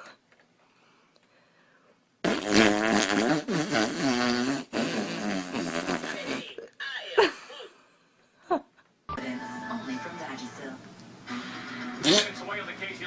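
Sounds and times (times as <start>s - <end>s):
fluttering fart noise: 2.2s - 6.5s, 12.0s - 12.3s.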